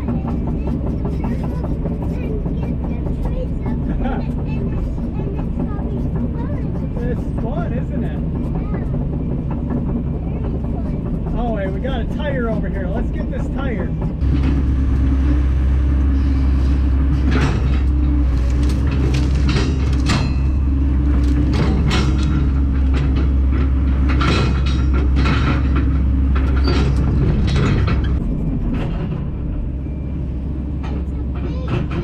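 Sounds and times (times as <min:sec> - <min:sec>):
excavator diesel engine: 0:00.0 - 0:32.0
knocks and clanks: 0:00.0 - 0:32.0.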